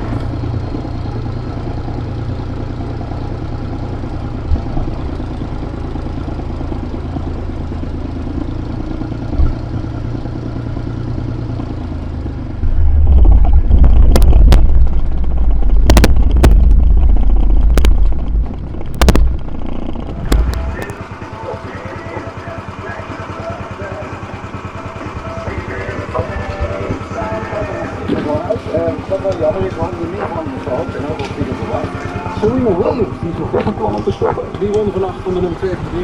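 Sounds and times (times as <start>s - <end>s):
tractor engine running: 0.0s - 36.0s
sharp knocks and clatters: 12.6s - 21.1s.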